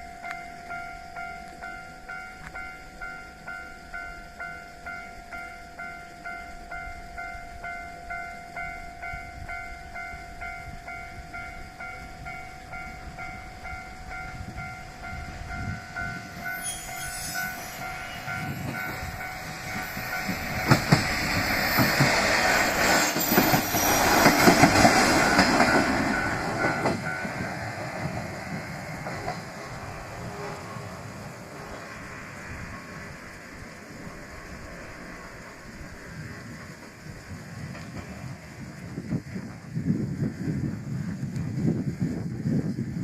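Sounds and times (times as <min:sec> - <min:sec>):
level-crossing warning bell: 0:00.0 - 0:29.4
train wheels clicking on rail joints: 0:09.8 - 0:39.9.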